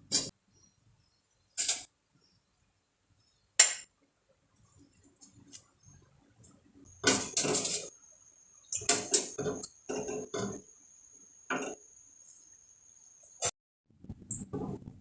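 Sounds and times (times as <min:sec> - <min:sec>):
kitchenware clinking and clattering: 0:06.9 - 0:08.0, 0:08.6 - 0:10.8, 0:11.4 - 0:11.8.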